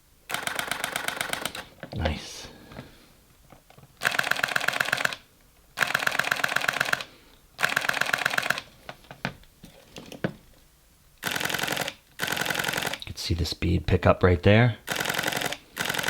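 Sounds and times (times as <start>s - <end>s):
camera shutter clicking in bursts: 0.3s - 1.8s, 4.0s - 8.7s, 11.2s - 13.1s, 14.8s - 16.0s.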